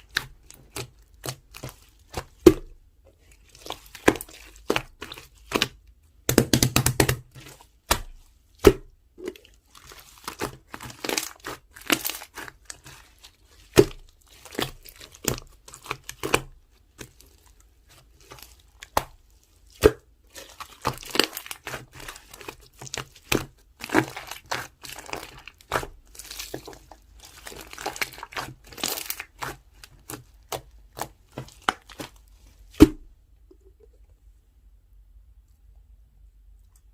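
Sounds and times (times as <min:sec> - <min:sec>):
slime squished by hand: 0:00.0 - 0:33.1.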